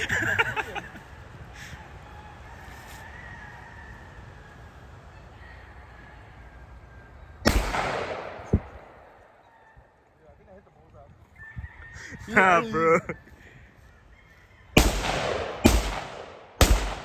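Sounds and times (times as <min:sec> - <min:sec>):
gunshot: 0:07.5 - 0:09.0, 0:14.8 - 0:17.0.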